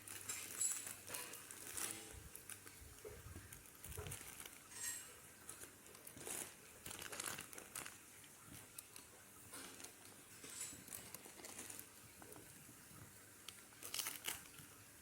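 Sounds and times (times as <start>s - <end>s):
plastic packaging crinkling: 0.0s - 15.0s.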